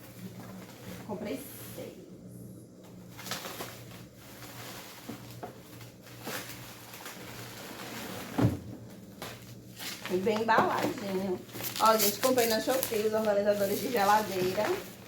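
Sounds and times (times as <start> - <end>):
packaging rustling: 3.0 - 15.0.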